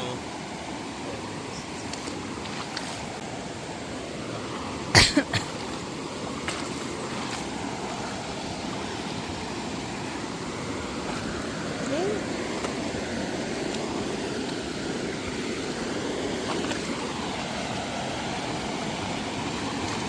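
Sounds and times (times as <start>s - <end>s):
rushing outdoor noise: 0.0s - 20.0s.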